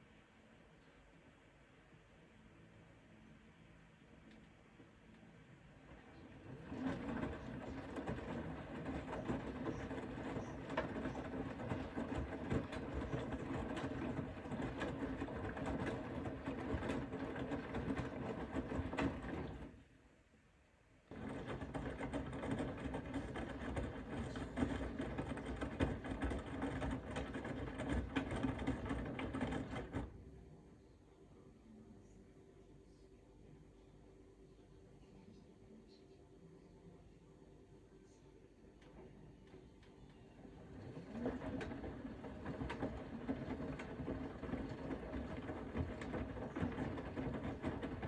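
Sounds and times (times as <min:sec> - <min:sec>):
washing machine motor humming: 0:05.7 - 0:19.9, 0:21.1 - 0:30.5, 0:38.8 - 0:48.0
water sloshing and knocking: 0:06.5 - 0:19.7, 0:40.7 - 0:48.0.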